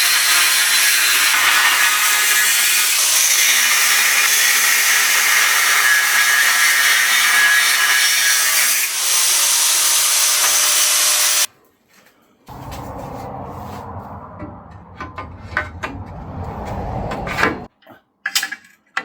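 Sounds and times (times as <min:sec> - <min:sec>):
power tool grinding steel: 0:00.0 - 0:11.5
quiet low sound: 0:12.5 - 0:17.7.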